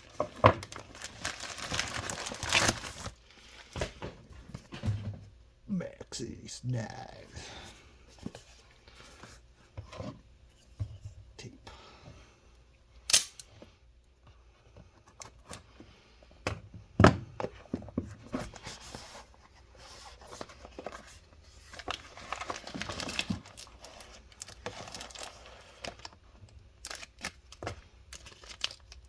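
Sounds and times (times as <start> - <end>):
wrapping crinkling and tearing: 0.1 - 3.6, 21.7 - 26.2, 26.8 - 29.0.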